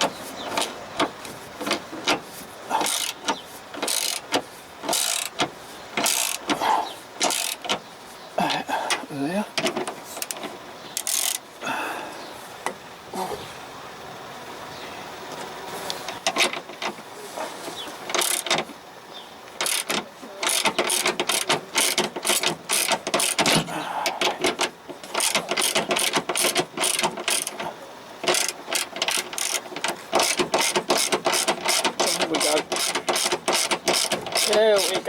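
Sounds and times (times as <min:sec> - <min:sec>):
ratchet wrench clicking: 0:00.0 - 0:07.8, 0:11.0 - 0:11.4, 0:18.1 - 0:18.6, 0:19.5 - 0:23.6, 0:24.2 - 0:35.0
scattered knocks: 0:19.6 - 0:35.0.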